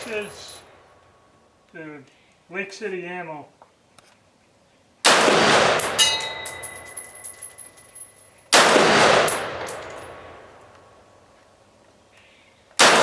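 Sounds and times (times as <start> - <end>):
rifle shots echoing: 5.0 - 7.2, 8.5 - 10.6, 12.8 - 13.0
short metallic pings: 5.8 - 7.7.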